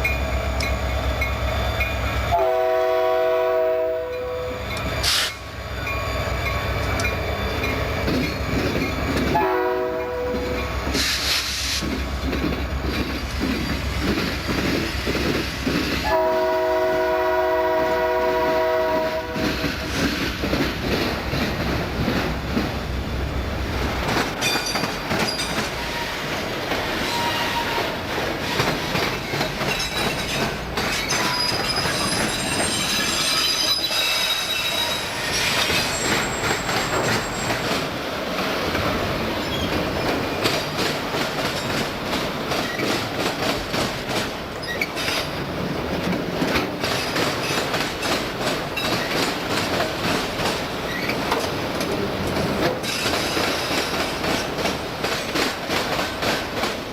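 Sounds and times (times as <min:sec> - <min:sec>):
train wheel squeal: 0:00.0 - 0:02.6, 0:04.0 - 0:16.2, 0:24.4 - 0:38.0, 0:39.3 - 0:40.7, 0:44.5 - 0:45.4, 0:48.8 - 0:49.4, 0:50.8 - 0:51.5, 0:52.8 - 0:54.5
train horn blasts: 0:02.3 - 0:04.6, 0:09.3 - 0:10.7, 0:16.0 - 0:19.5
train cars clattering over rails: 0:04.7 - 0:56.9.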